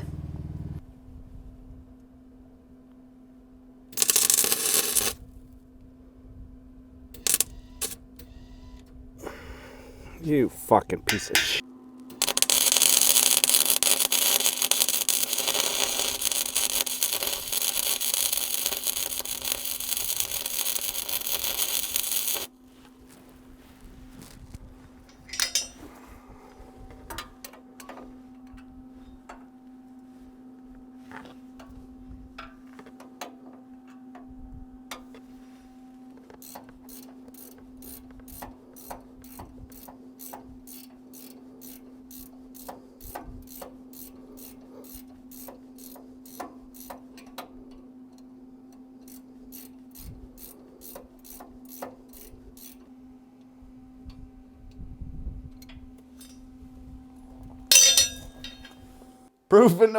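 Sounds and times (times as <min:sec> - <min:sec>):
steady low hum: 0:00.0 - 0:32.7.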